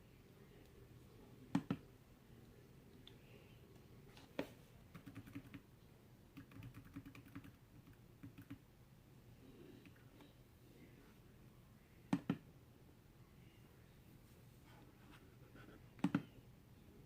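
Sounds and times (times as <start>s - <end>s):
faint computer keyboard typing: 1.5s - 1.8s, 4.4s - 5.7s, 6.3s - 8.7s, 16.0s - 16.4s.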